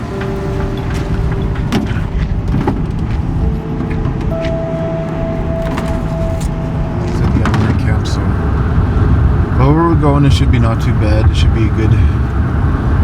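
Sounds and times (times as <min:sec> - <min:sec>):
low engine rumble: 0:00.0 - 0:13.0
thin held tones: 0:03.5 - 0:09.6.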